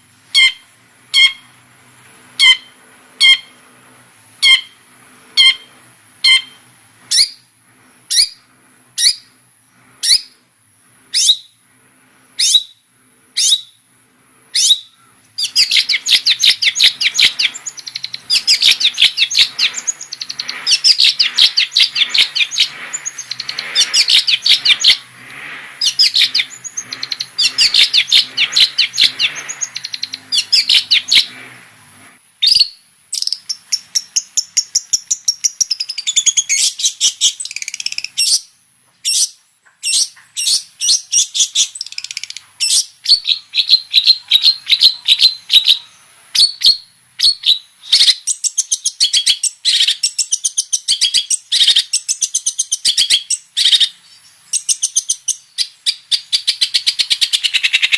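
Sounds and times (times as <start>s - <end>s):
bird chattering high notes: 0.3s - 1.5s, 2.4s - 3.6s, 4.4s - 4.8s, 5.4s - 7.4s, 14.6s - 25.1s, 25.8s - 31.3s.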